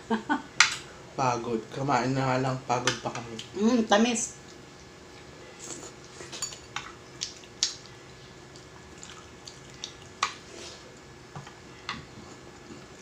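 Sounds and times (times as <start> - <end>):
wet eating clicks and smacks: 7.1 - 10.4.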